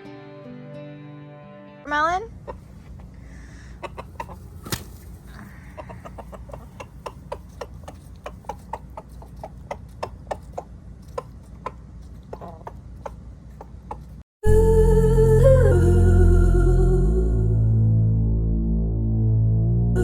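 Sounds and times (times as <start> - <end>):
chickens clucking: 2.4 - 14.2
low steady rumble: 14.4 - 20.0.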